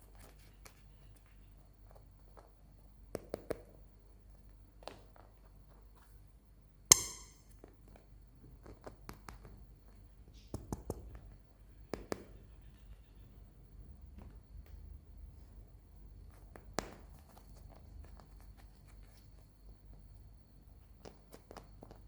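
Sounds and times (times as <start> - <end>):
sharp loud click: 6.9 - 7.4.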